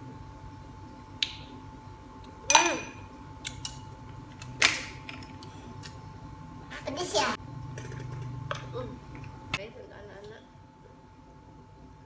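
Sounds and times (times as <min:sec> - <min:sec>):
spoon clinking against glass: 0:02.5 - 0:03.8.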